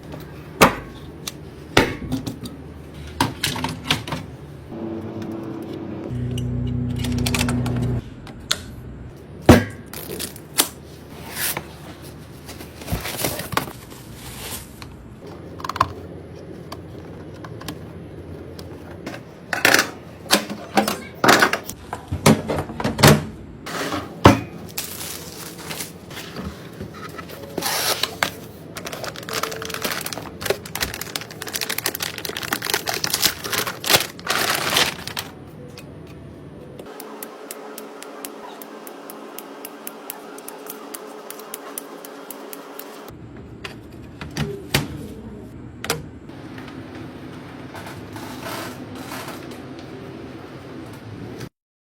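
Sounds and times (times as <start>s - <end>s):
packaging rustling and tearing: 24.7s - 35.4s.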